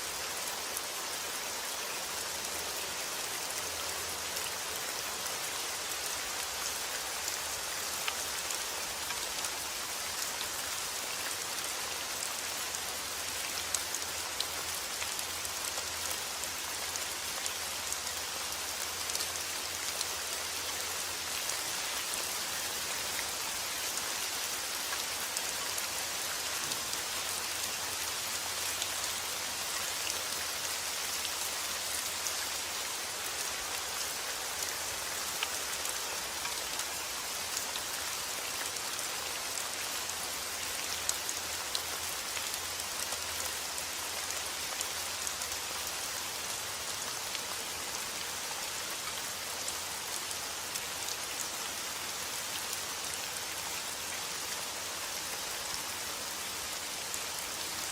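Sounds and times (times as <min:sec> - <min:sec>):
steady rain hissing: 0:00.0 - 0:57.9
raindrops pattering on a surface: 0:01.7 - 0:46.1.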